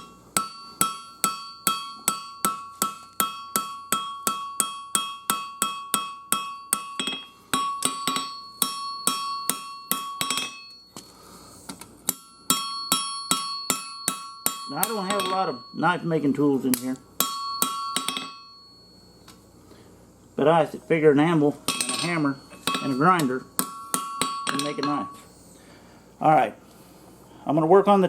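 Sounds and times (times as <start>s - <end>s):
hammer blows on anvil: 0.0s - 11.1s, 12.1s - 18.7s, 21.6s - 25.3s
metallic ring of anvil: 0.0s - 11.1s, 12.1s - 19.4s, 21.6s - 25.3s.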